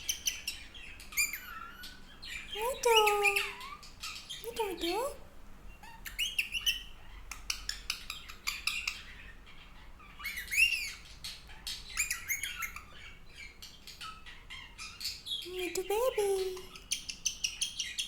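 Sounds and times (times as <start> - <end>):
parakeet chirping and squawking: 1.1 - 5.0.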